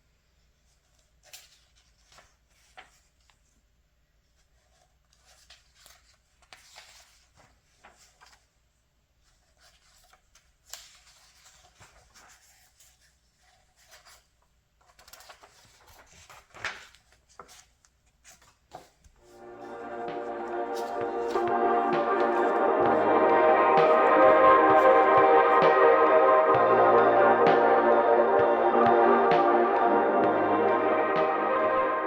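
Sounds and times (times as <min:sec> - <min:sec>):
page flips: 0:00.7 - 0:03.5, 0:04.4 - 0:08.5, 0:09.2 - 0:19.4
magazine pages rustling: 0:00.8 - 0:03.5, 0:04.4 - 0:08.6, 0:09.2 - 0:19.4
music: 0:19.2 - 0:32.0.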